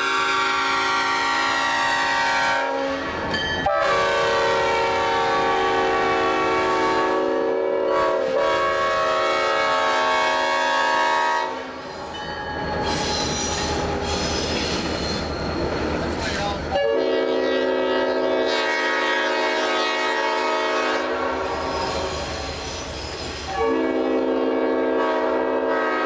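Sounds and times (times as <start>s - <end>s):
locomotive air horn chord: 0.0s - 11.9s, 16.8s - 22.1s, 23.5s - 26.0s
moving train rumble and clatter: 0.0s - 26.0s.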